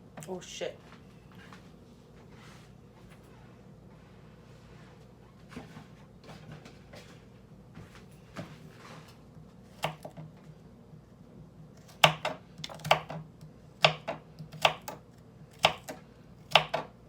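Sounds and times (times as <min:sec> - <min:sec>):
knife chopping on cutting board: 0:09.7 - 0:10.3, 0:11.8 - 0:17.0.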